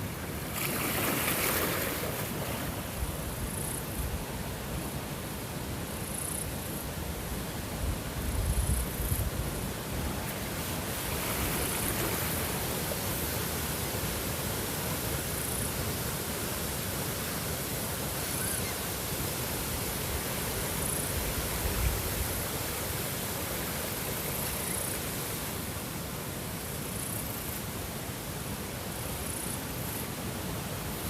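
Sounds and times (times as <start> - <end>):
running water rushing: 0.0 - 3.4.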